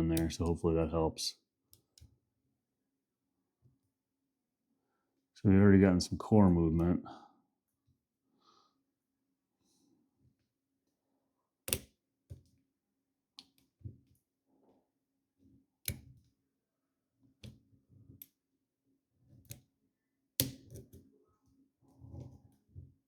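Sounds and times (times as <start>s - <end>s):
lock pick metallic clicks: 11.7s - 11.9s, 20.4s - 20.8s.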